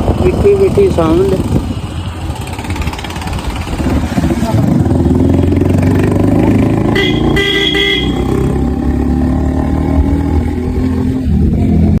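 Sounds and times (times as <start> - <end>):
vehicle horn honking: 6.8 - 8.5.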